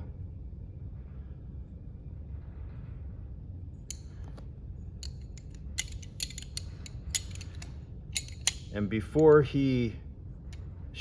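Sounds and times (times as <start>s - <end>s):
low steady hum: 0.0s - 11.0s
metallic clicks of folding knife: 5.0s - 8.8s.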